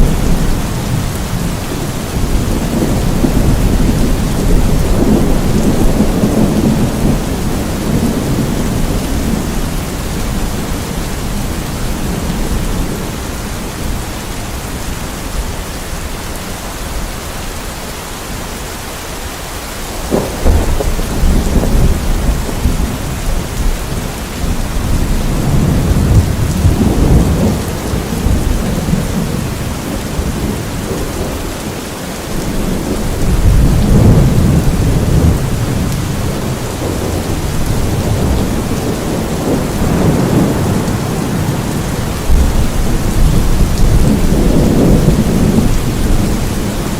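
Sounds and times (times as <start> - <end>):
thunder rumbling: 0.0 - 14.7, 19.8 - 46.9
heavy rain: 0.0 - 46.9
sharp thunder clap: 20.0 - 24.0, 32.6 - 46.4.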